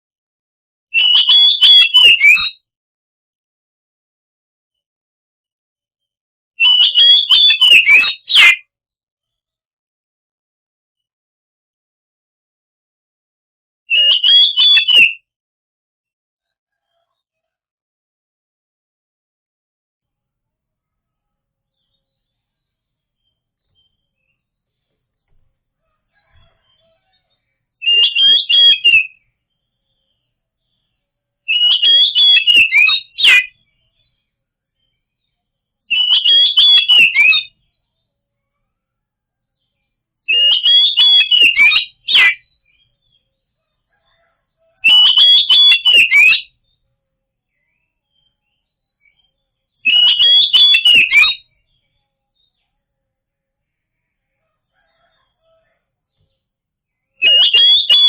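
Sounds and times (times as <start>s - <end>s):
bird singing harsh rapid phrases: 1.0s - 2.6s, 6.6s - 8.6s, 13.9s - 15.2s, 25.8s - 38.6s, 39.6s - 46.8s, 47.5s - 53.1s, 56.9s - 58.0s.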